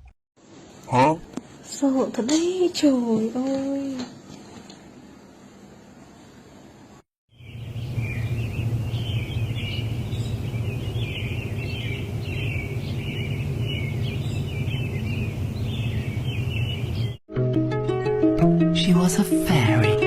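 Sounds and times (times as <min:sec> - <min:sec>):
birds chirping: 0:07.3 - 0:17.2
steady low hum: 0:07.4 - 0:17.2.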